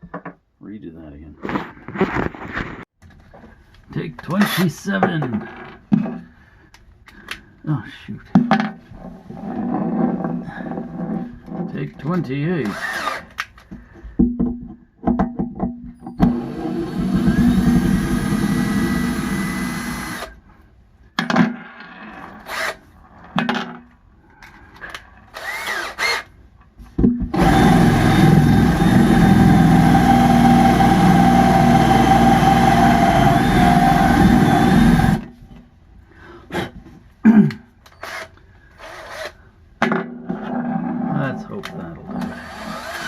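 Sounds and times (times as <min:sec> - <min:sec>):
power drill boring into wood: 0:12.6 - 0:13.4, 0:16.2 - 0:20.4, 0:22.4 - 0:22.8, 0:25.3 - 0:26.3, 0:27.3 - 0:35.3, 0:38.0 - 0:39.4, 0:42.2 - 0:43.0.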